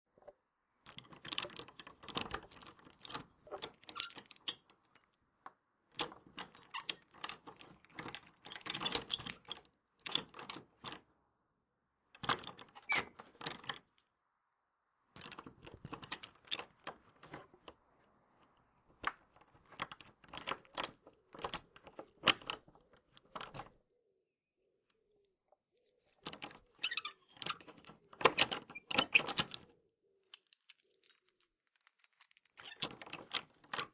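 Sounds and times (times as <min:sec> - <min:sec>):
padlock clicking and rattling: 0:00.8 - 0:11.1, 0:15.2 - 0:17.8, 0:19.0 - 0:23.8, 0:26.1 - 0:33.9.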